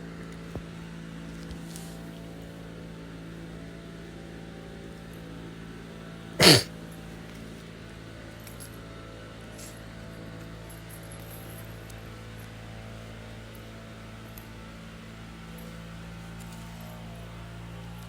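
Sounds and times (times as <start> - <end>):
loud sneeze: 6.4 - 6.7.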